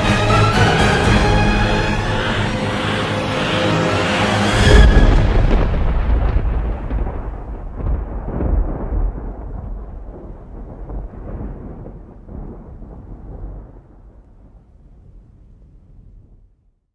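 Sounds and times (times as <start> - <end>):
closing music: 0.0 - 7.0
deep boom with long rumble: 4.6 - 14.6.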